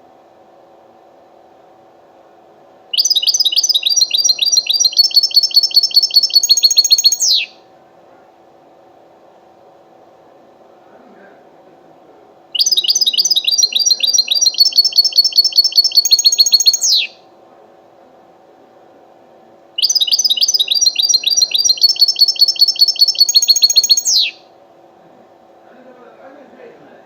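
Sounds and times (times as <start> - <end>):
finch singing: 3.0 - 7.6, 12.6 - 17.2, 19.8 - 24.4.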